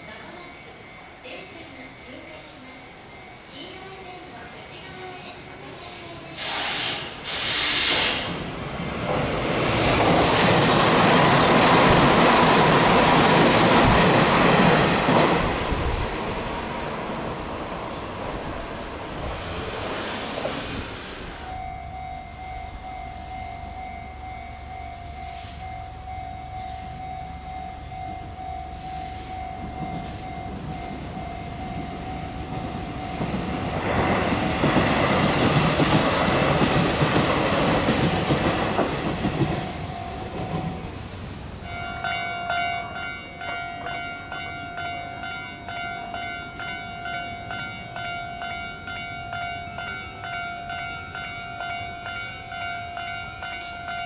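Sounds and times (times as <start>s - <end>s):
level crossing warning bell: 0.0s - 6.4s, 21.2s - 54.0s
train passing: 0.0s - 54.0s.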